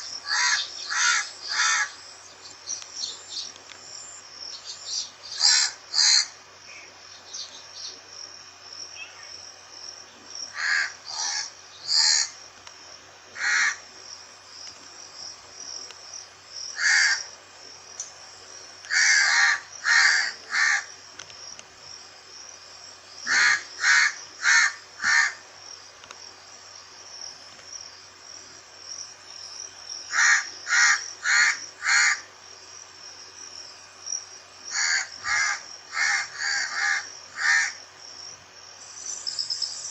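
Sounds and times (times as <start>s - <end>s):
crow cawing: 0.2s - 2.0s, 5.4s - 6.3s, 10.5s - 12.4s, 13.4s - 13.8s, 16.8s - 17.3s, 18.9s - 20.9s, 23.3s - 25.4s, 30.1s - 32.3s, 34.7s - 37.8s
high-pitched insect drone: 33.3s - 39.9s.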